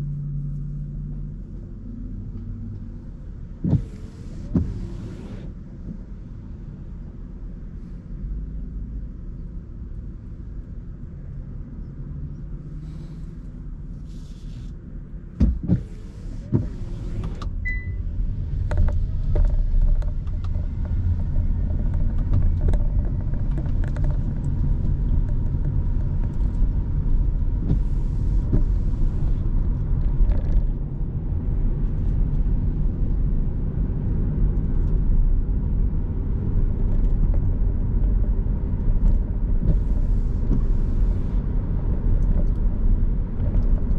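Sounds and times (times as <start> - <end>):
car road and engine rumble: 0.0 - 43.9
hiss of tyre spray: 14.0 - 14.7.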